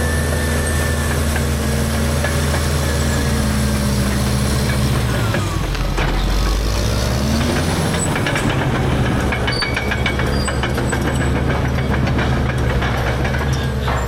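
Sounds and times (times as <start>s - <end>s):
diesel bulldozer engine running: 0.0s - 14.0s.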